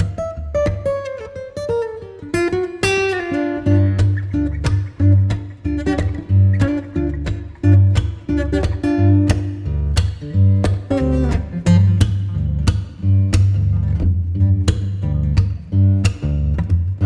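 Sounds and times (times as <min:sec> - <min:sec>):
plucked guitar notes: 0:00.0 - 0:17.0
deep bass: 0:03.7 - 0:17.0.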